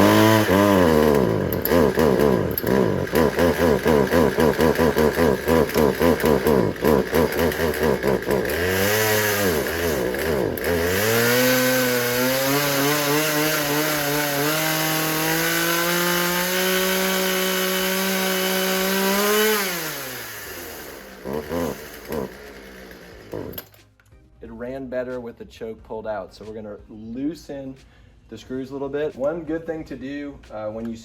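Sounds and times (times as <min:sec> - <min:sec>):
chainsaw engine revving: 0:00.0 - 0:23.8.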